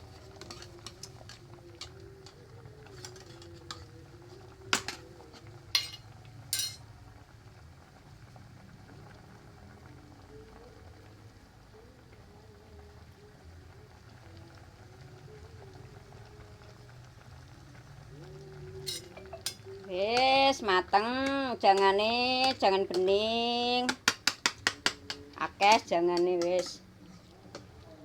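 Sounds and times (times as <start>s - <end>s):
soup simmering in a pot: 0.0s - 28.0s
utensils clanking against a pot: 0.1s - 4.0s, 4.7s - 6.8s, 18.8s - 23.2s, 23.8s - 26.8s.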